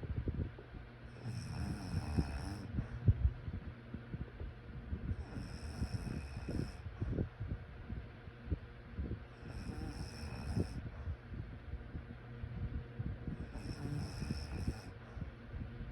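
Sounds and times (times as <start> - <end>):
person snoring: 1.2 - 2.8, 5.2 - 6.8, 9.4 - 10.8, 13.4 - 15.0.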